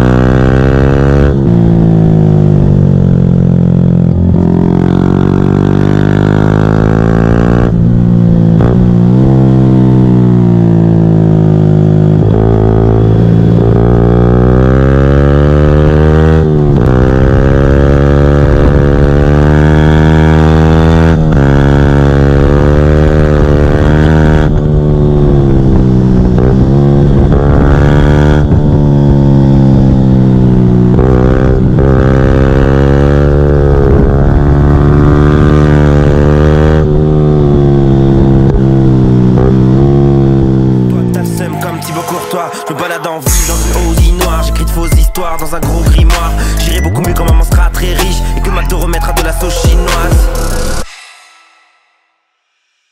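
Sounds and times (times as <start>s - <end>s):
motorcycle engine revving: 0.0s - 42.2s.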